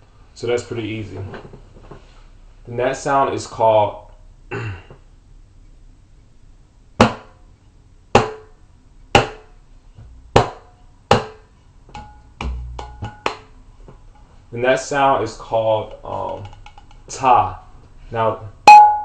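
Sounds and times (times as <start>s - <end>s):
hand drum strokes: 12.0s - 13.4s
low drum thump: 12.4s - 13.3s.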